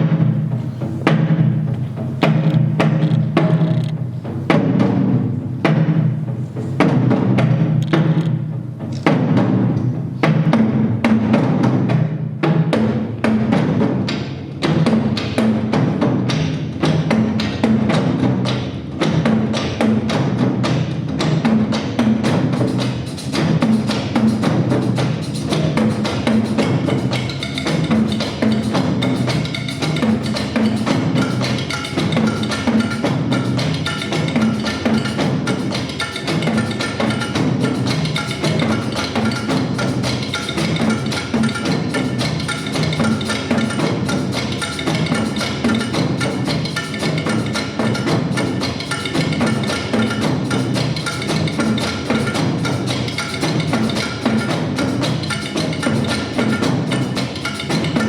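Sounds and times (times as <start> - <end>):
drums beaten with wooden sticks: 0.0 - 58.0.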